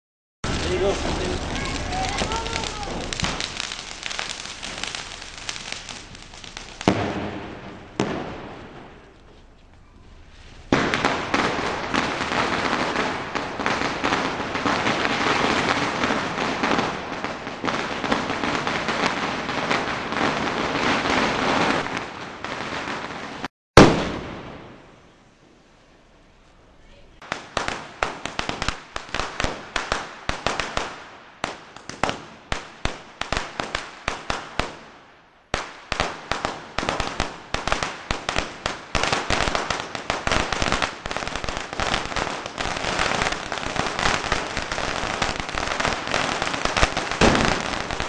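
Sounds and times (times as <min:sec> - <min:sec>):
firecracker bangs: 0:00.4 - 0:09.2, 0:10.7 - 0:21.9, 0:23.8 - 0:25.0, 0:35.6 - 0:48.0
firecrackers crackling and fizzing: 0:00.4 - 0:25.1, 0:27.2 - 0:48.0.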